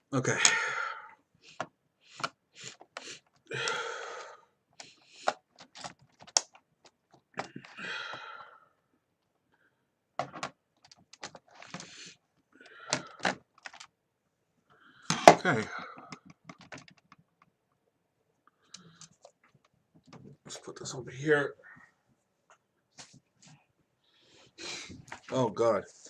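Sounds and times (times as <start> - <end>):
plastic keyboard parts clicking: 4.8 - 7.8, 10.2 - 11.9, 12.8 - 13.9, 16.0 - 17.5
scraping rustling noises: 24.8 - 26.0.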